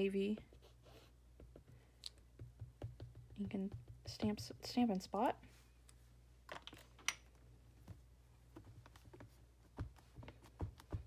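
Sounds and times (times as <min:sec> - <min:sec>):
rubber stamp tapping: 0:01.4 - 0:04.4.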